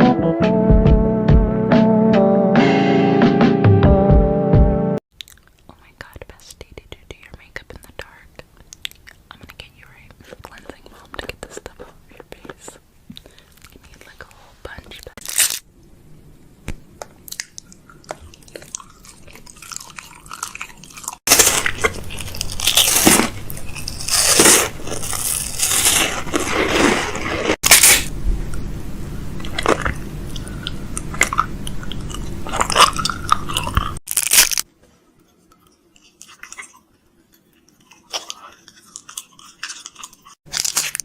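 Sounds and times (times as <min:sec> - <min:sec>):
food packaging crinkling: 0:15.1 - 0:15.6, 0:17.2 - 0:28.1, 0:29.4 - 0:34.7, 0:37.8 - 0:41.0.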